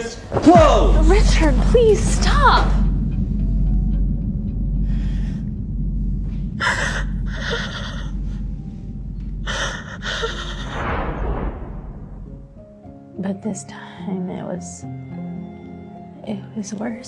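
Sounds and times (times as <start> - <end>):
steady low rumble: 0.6 - 12.8.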